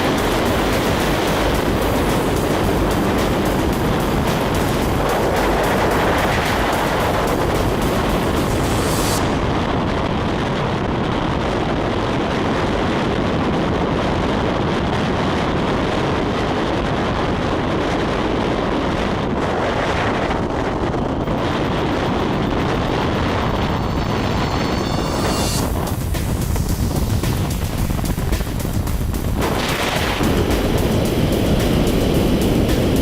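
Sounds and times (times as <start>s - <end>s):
wind buffeting microphone: 0.0s - 33.0s.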